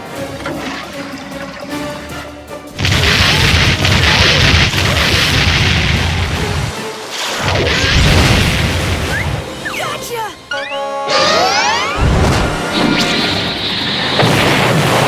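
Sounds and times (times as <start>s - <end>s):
cartoon explosion rumbling roar: 2.8s - 6.6s.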